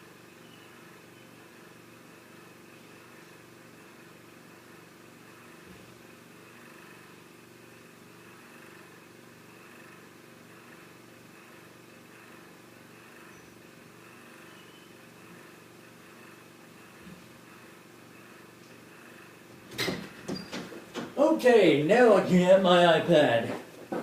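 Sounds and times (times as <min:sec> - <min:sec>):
faint low hum: 0:00.0 - 0:24.0.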